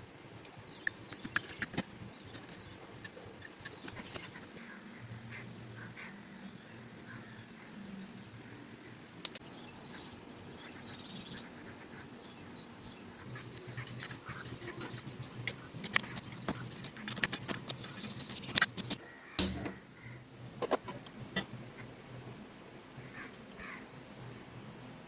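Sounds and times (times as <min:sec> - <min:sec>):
kitchen work clicks and knocks: 0:18.6 - 0:19.8.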